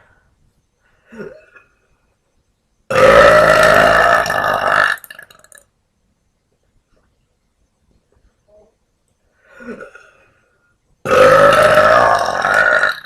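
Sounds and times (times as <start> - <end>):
woman burping loudly: 2.9 - 5.6, 9.6 - 10.2, 11.0 - 13.0.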